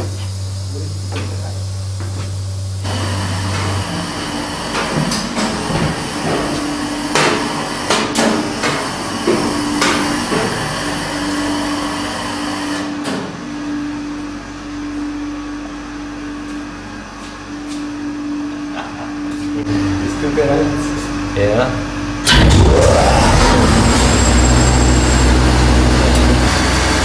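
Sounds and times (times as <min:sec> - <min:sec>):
sharp knocks and clanks: 0:03.5 - 0:10.7
steady hum: 0:18.0 - 0:27.0.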